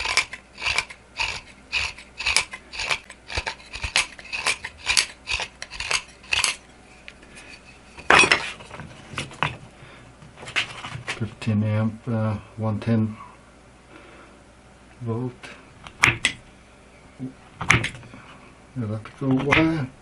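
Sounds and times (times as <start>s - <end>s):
knife blade scraping strokes: 0.0s - 8.6s.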